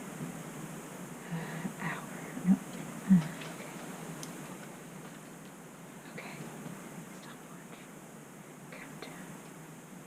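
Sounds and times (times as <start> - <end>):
soft sound from a person: 1.2 - 8.0.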